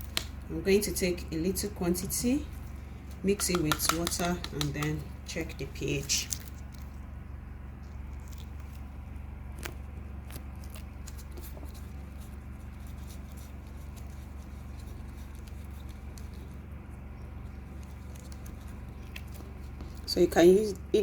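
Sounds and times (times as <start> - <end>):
low electrical hum: 0.0 - 21.0
containers and utensil clicking: 3.3 - 5.1.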